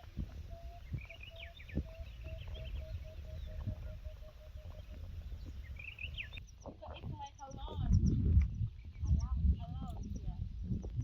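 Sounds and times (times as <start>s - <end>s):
higher bird chirps: 0.5s - 6.7s.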